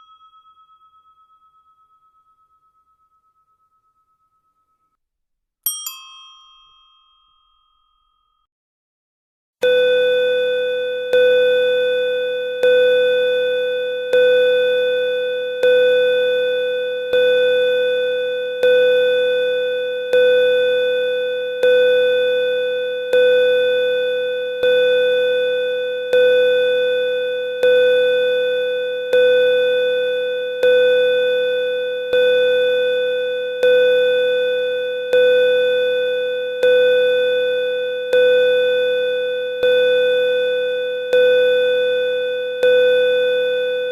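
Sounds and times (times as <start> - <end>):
bright bell ding: 0.0 - 4.9, 5.7 - 8.4
pulsing bell tone: 0.0 - 5.0, 5.7 - 8.5, 9.6 - 43.9.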